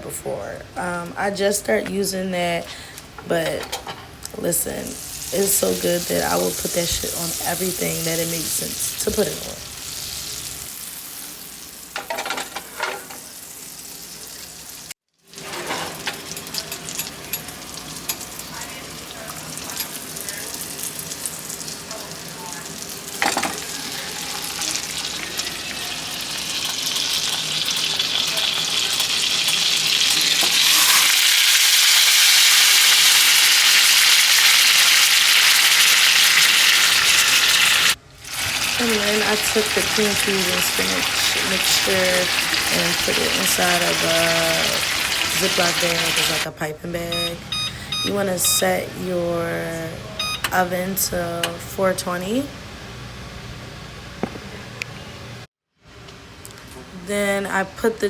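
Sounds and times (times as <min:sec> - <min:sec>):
food sizzling in pan: 0:04.7 - 0:46.5.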